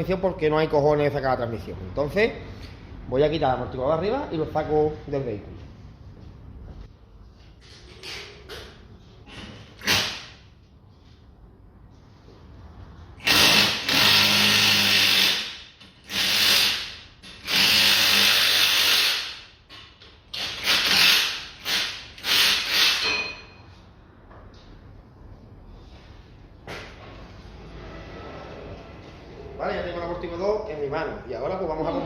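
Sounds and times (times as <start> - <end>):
power tool running in bursts: 13.2 - 19.4.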